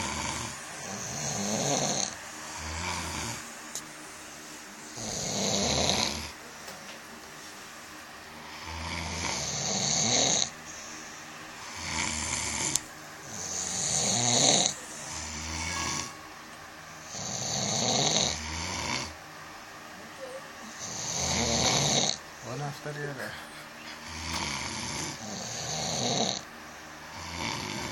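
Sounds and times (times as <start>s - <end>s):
people snoring: 0.0s - 3.5s, 4.8s - 6.4s, 8.4s - 16.2s, 17.0s - 19.2s, 20.6s - 22.2s, 23.2s - 26.5s, 27.1s - 27.9s.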